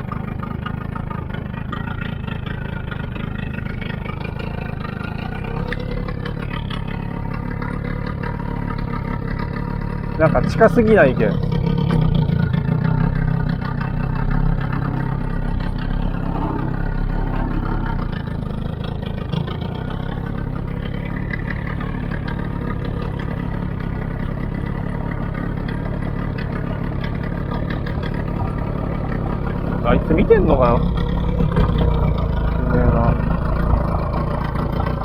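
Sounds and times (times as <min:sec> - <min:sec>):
boat engine humming: 0:00.0 - 0:35.0.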